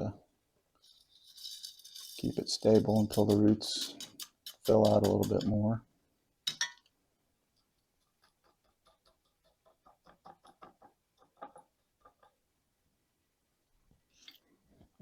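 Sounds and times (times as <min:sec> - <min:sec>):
soil grains ticking into pot: 0:02.0 - 0:05.6.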